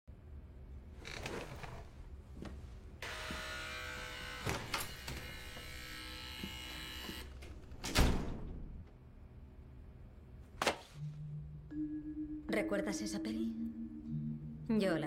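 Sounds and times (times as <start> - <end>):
steady electric buzz: 3.0 - 7.4.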